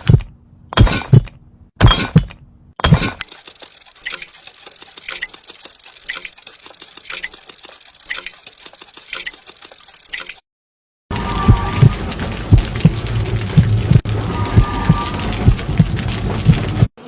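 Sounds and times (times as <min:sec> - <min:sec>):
heartbeat pulsing: 0:11.4 - 0:16.9.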